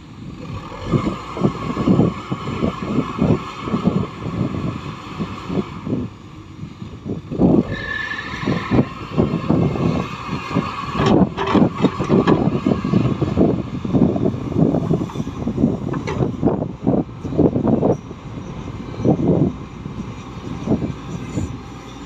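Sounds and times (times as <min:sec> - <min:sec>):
heavy machinery engine rumble: 0:00.0 - 0:22.0
knocks and clatter: 0:10.9 - 0:12.6, 0:15.9 - 0:16.3.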